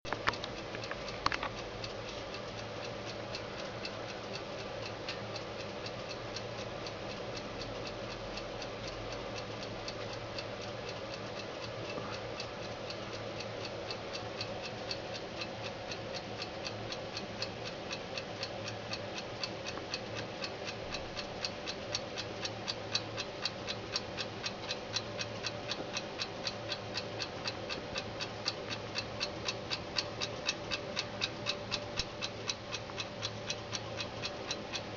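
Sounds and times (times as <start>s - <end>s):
steady low hum: 0.1s - 34.9s
alarm clock ticking: 1.3s - 34.9s.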